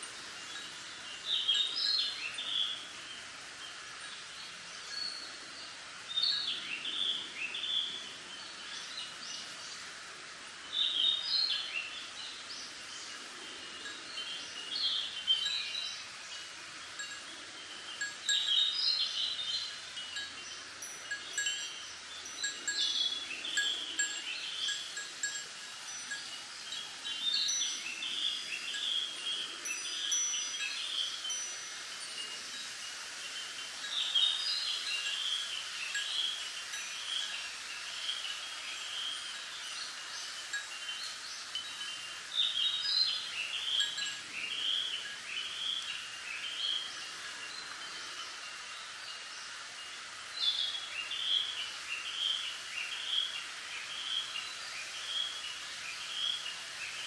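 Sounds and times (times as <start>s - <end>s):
wind chimes tinkling: 0.0s - 3.0s, 12.8s - 49.2s
wind in bamboo leaves: 0.0s - 57.0s.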